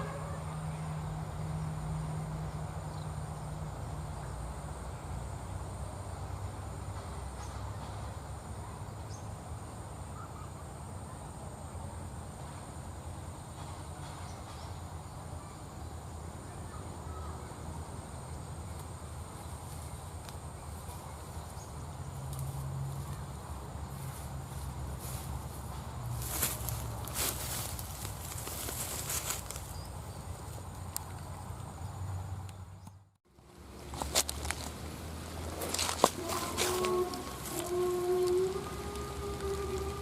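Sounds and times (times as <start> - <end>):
high insect drone: 0.0 - 32.5, 33.3 - 40.0
low hum: 31.4 - 40.0.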